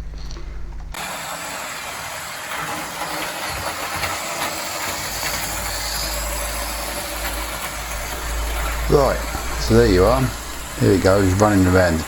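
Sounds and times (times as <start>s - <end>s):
low hum: 0.0s - 1.0s, 5.5s - 12.0s
model train whirring on track: 0.9s - 12.0s.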